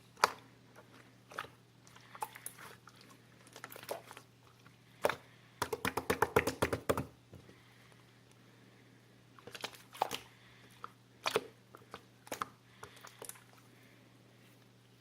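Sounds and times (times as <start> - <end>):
faint steady hum: 0.0 - 15.0.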